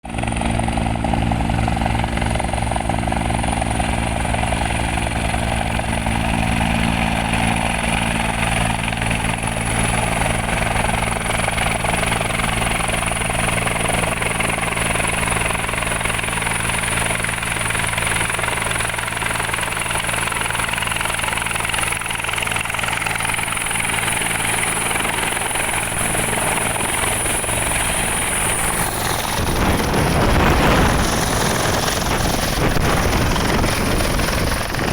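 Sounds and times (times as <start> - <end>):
helicopter engine and rotor drone: 0.0 - 34.9.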